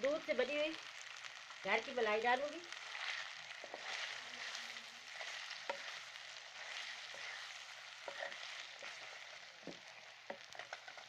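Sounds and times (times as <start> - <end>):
food sizzling in a pan: 0.0 - 11.0.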